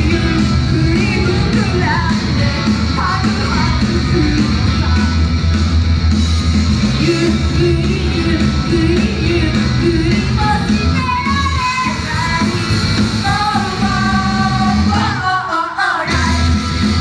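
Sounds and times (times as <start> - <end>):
loud rock music: 0.0 - 17.0
group singing: 13.2 - 16.4.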